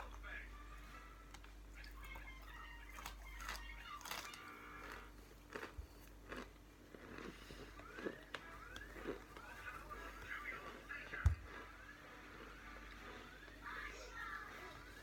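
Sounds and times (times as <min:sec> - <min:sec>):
crunching bites: 0:03.0 - 0:09.5.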